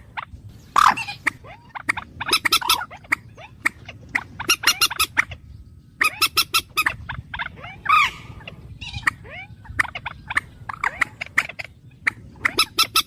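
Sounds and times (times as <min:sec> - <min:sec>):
bird calls: 0:00.0 - 0:13.0.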